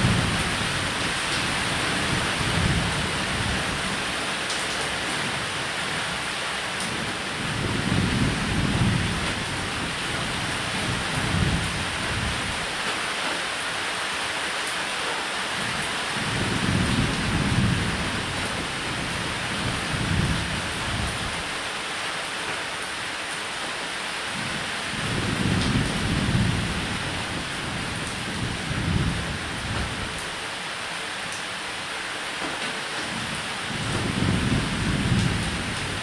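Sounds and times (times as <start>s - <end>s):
thunder rumbling: 0.0s - 4.0s, 7.0s - 12.6s, 25.0s - 30.2s, 33.7s - 36.0s
rain pattering on a roof: 0.0s - 36.0s.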